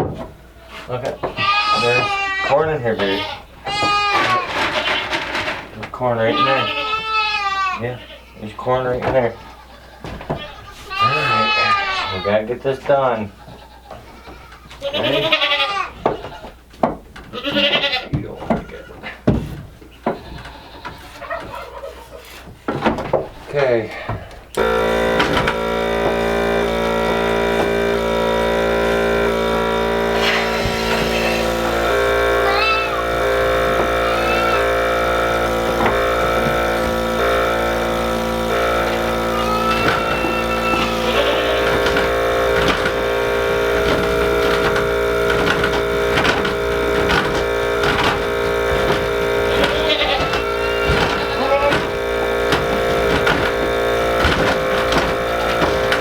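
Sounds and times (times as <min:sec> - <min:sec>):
milking machine clicks: 0:00.0 - 0:07.1, 0:16.1 - 0:56.0
vacuum pump motor hum: 0:00.0 - 0:09.4, 0:22.3 - 0:56.0.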